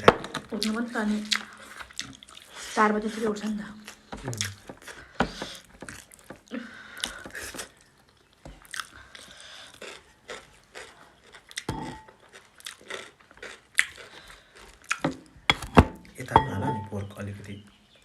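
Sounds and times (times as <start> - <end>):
chewing and biting food: 0.3 - 16.1
crunchy clicking mouth noises: 3.8 - 15.4.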